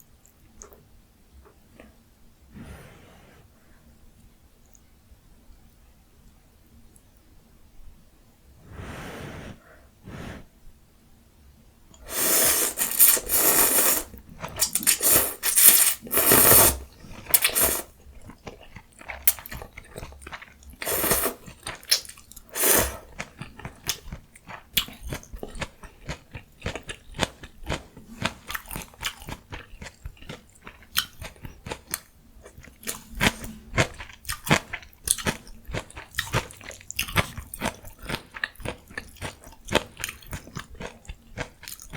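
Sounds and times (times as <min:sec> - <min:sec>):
loud noisy slurping bursts: 0:12.0 - 0:14.1, 0:14.9 - 0:16.8, 0:20.8 - 0:21.4, 0:22.6 - 0:23.0
wet chewing: 0:12.0 - 0:41.9.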